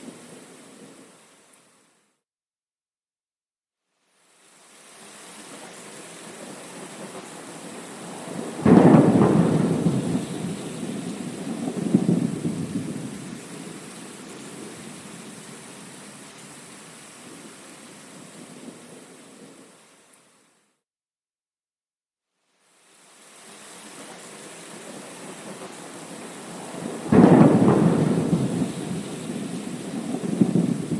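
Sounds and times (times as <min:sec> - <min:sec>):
steady rain: 0:00.0 - 0:02.0, 0:04.2 - 0:20.7, 0:22.6 - 0:30.9
thunder crash rumbling: 0:08.2 - 0:13.8, 0:26.5 - 0:30.9.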